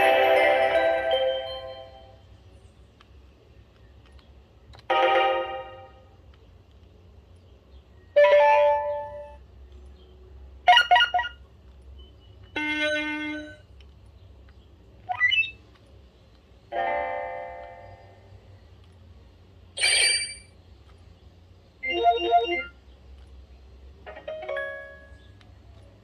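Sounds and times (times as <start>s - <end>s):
electronic alert chimes: 19.8s - 20.5s, 21.8s - 22.7s.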